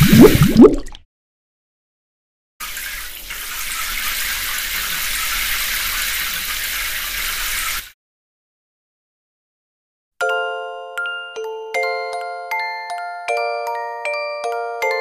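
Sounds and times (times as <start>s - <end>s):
water jets spraying: 2.6s - 7.9s.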